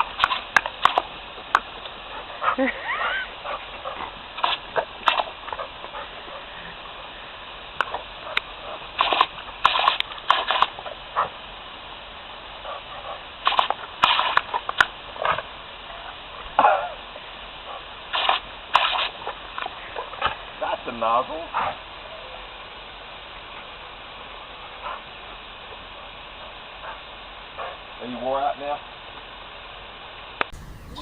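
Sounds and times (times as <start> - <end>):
dog snapping at water spray: 0.0 - 1.8, 3.8 - 5.7, 7.8 - 11.3, 13.4 - 15.5, 18.1 - 20.4.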